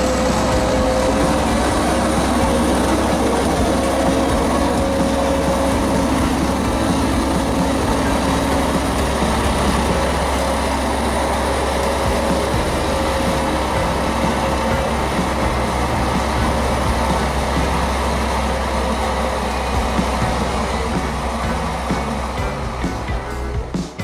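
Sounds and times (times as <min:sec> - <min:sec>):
snow groomer engine droning: 0:00.0 - 0:24.0.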